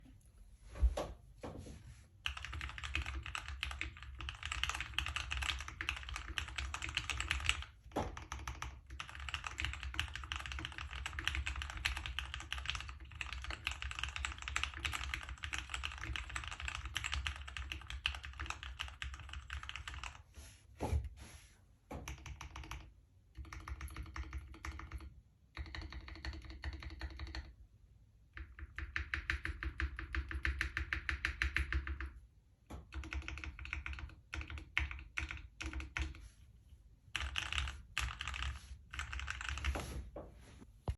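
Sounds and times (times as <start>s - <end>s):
mechanical keyboard typing: 2.2s - 20.2s, 22.0s - 27.6s, 28.4s - 32.2s, 32.8s - 36.2s, 37.1s - 39.8s.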